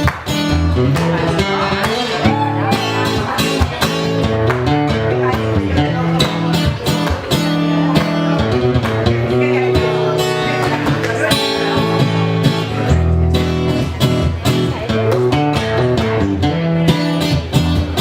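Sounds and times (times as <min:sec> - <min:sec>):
live band with strummed guitar: 0:00.0 - 0:18.0.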